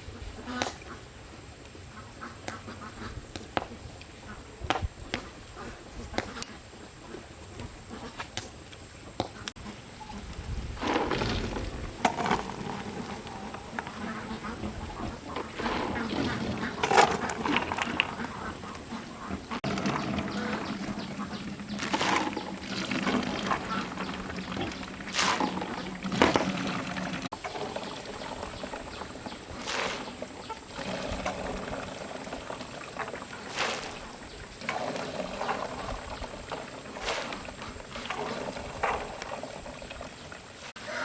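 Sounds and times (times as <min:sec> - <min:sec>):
water splashing: 0:10.4 - 0:40.7.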